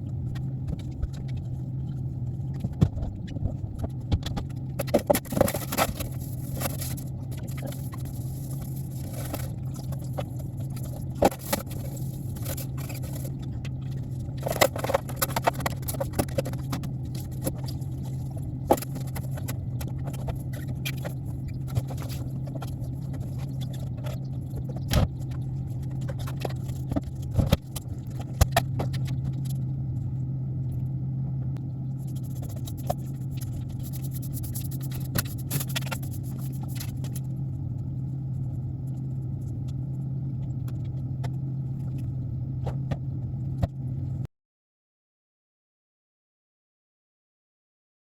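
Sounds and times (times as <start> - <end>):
vehicle interior drone: 0.0 - 44.3.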